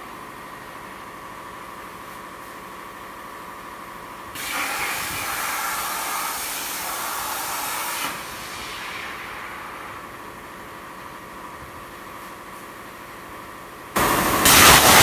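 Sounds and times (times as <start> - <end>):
plasma torch hissing: 4.4 - 10.8, 14.0 - 15.0
machine hum: 4.5 - 15.0.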